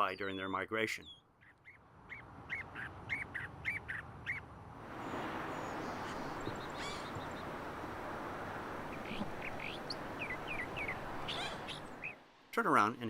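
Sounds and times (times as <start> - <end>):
bird calling: 0.0 - 7.6, 8.9 - 12.2
faint bird chirps: 8.9 - 12.2.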